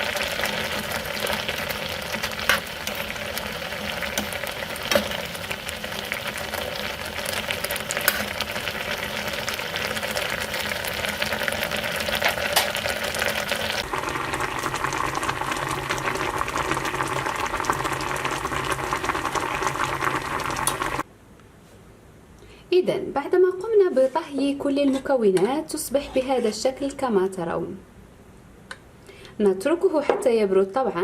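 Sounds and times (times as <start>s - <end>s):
liquid simmering and bubbling in a pot: 0.0s - 21.1s.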